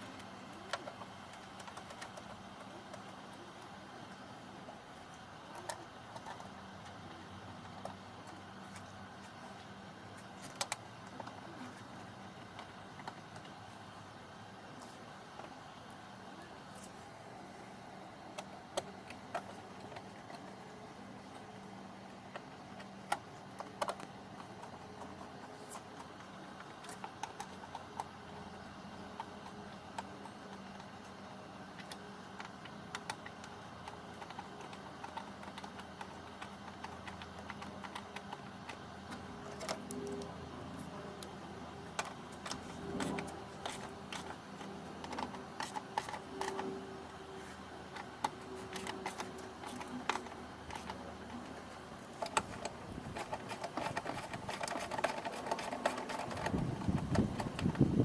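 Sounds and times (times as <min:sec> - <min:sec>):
low steady hum: 0:00.0 - 0:58.0
hands clicking and tapping parts: 0:18.2 - 0:58.0.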